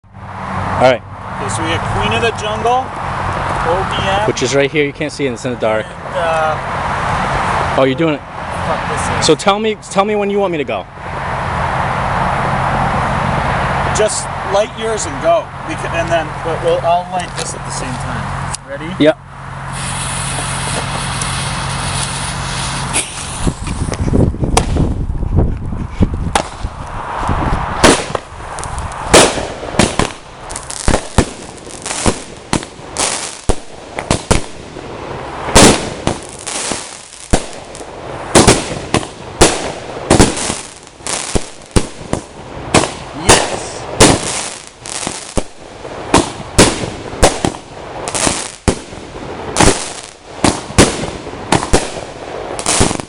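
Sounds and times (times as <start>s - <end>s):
fireworks crackling: 1.5s - 19.0s, 19.6s - 25.2s, 26.3s - 53.0s
fireworks bangs: 19.7s - 25.1s, 26.2s - 53.0s.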